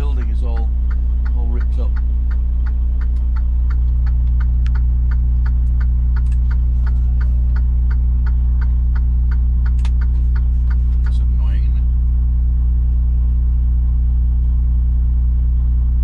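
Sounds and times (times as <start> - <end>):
light even ticking: 0.0 - 11.8
truck engine humming: 0.0 - 16.0.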